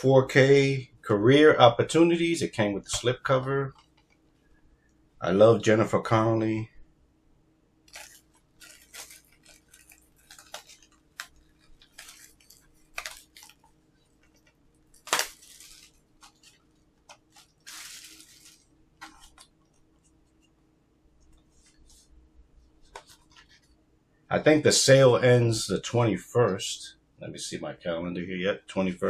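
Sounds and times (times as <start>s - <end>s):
cardboard rustling: 7.9s - 20.1s.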